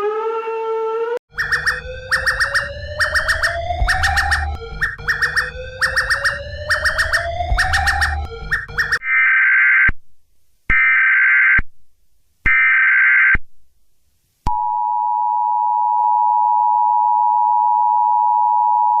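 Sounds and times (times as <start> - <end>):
digital header data tones: 1.3 - 9.0
steady two-tone attention signal: 1.3 - 9.0.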